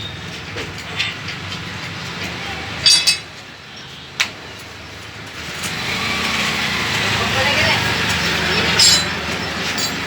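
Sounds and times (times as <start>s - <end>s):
steady background noise: 0.0s - 10.0s
metallic clinks with ring: 8.8s - 9.2s, 9.8s - 10.0s.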